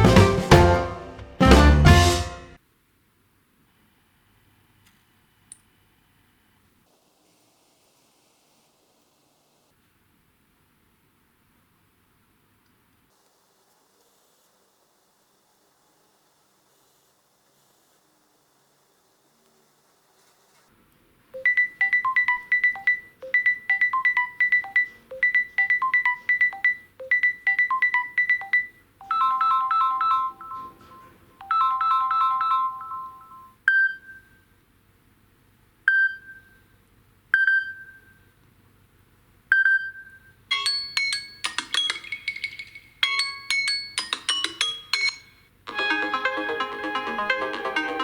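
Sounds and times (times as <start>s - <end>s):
fast ringtone melody: 0.0s - 2.5s, 21.4s - 33.5s, 40.5s - 48.0s.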